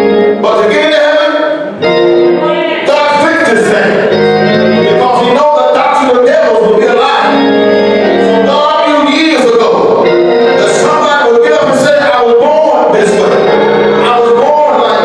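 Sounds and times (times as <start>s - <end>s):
organ and keyboard chords: 0.0s - 15.0s
person singing: 8.1s - 15.0s.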